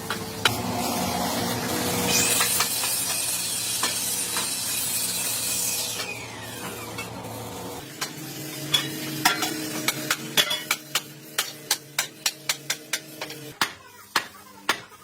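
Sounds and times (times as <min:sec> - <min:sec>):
power tool hissing and winding down: 0:00.5 - 0:10.2.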